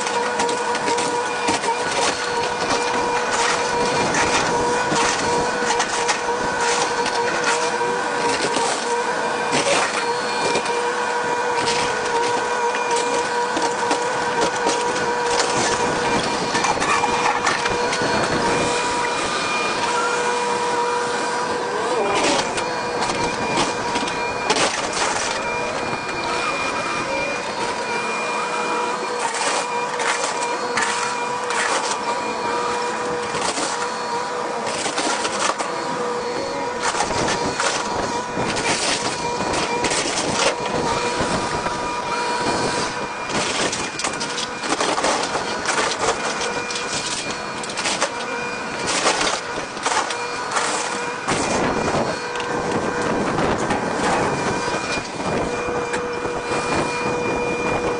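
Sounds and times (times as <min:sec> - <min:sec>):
excavator machine whine: 0:00.0 - 0:57.9.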